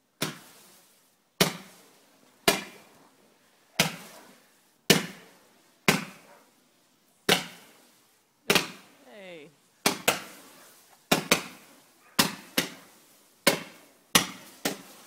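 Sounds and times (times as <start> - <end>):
fireworks bangs echoing: 8.5 - 15.0.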